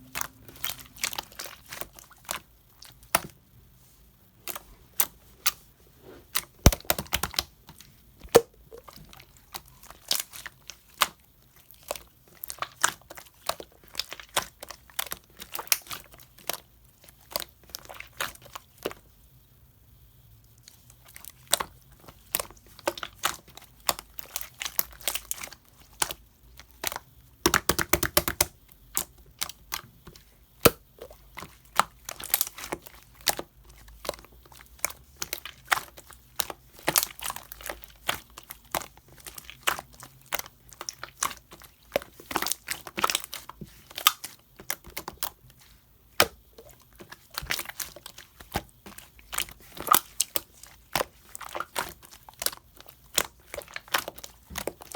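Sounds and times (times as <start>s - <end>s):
sticky slime clicks and crackles: 6.3s - 19.0s, 21.0s - 54.9s.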